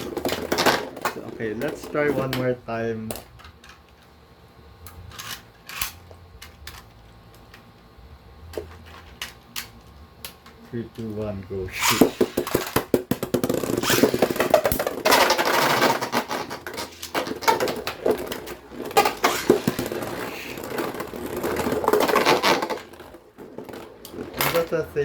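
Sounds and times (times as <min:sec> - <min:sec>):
spinning tops whirring and scraping: 0:00.0 - 0:04.2, 0:04.8 - 0:07.8, 0:08.4 - 0:25.0
spinning tops clashing clacks: 0:11.8 - 0:24.9.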